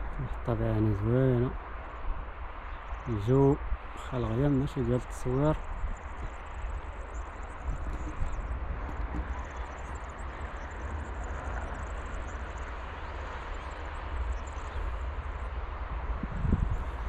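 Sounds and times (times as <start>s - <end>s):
wind buffeting microphone: 0.0s - 17.0s
high rapid chirping trills: 4.0s - 17.0s.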